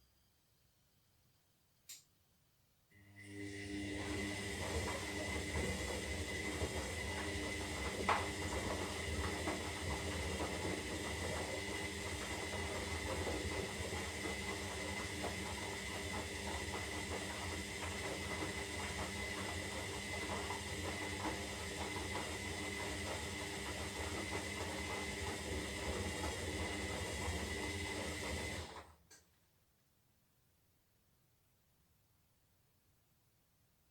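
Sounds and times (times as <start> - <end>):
washing machine running: 3.0 - 29.0.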